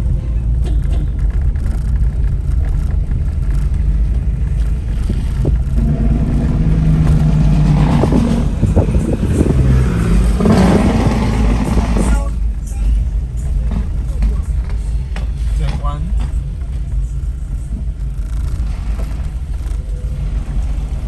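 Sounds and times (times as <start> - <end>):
car road and engine rumble: 0.0 - 21.0
humming engine tone: 0.0 - 21.0
heavy vehicle passing: 2.4 - 21.0.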